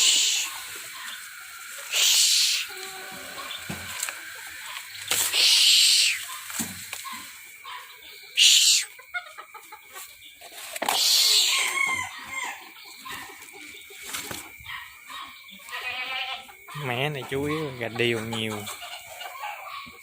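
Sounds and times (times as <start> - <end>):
roosters calling and squawking: 0.0 - 20.0.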